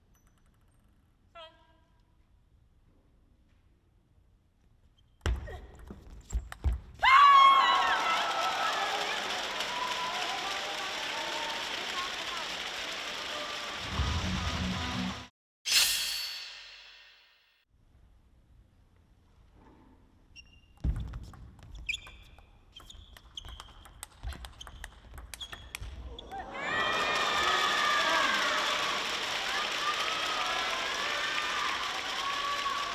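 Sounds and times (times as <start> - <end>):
crowd applauding and cheering: 7.0 - 15.3, 26.0 - 32.9
music playing: 13.8 - 15.3
shoe squeaks on floor: 20.3 - 21.1, 21.7 - 25.9.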